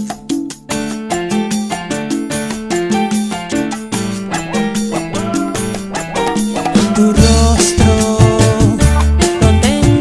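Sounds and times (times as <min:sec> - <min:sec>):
salsa style music: 0:00.0 - 0:10.0.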